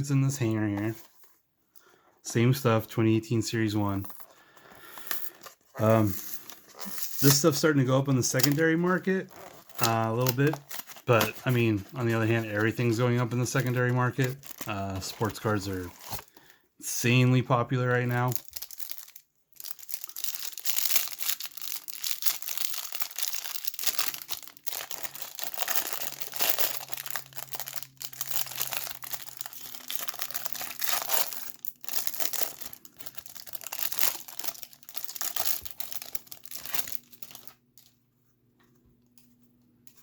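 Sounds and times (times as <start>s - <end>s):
plastic wrapper tearing and crinkling: 5.3s - 16.5s, 18.0s - 37.9s.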